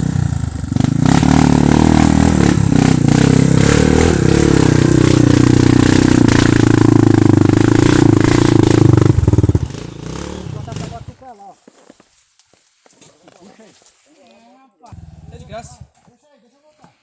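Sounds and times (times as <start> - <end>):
motorcycle engine at high revs: 0.0 - 11.1.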